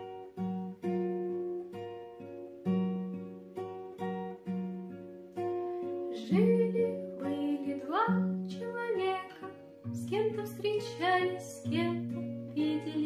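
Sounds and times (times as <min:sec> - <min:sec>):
acoustic guitar picking notes: 0:00.0 - 0:13.0
person singing: 0:06.2 - 0:12.0.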